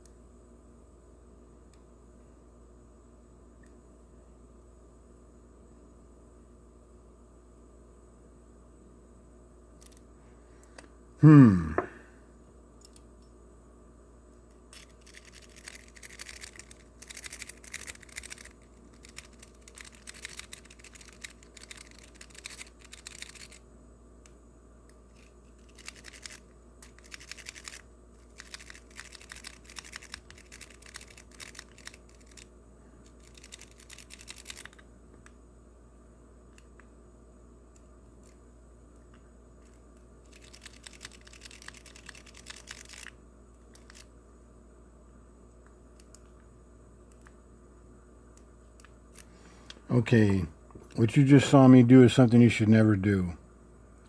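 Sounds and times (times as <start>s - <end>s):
lock rake clicking and rattling: 14.7s - 23.6s.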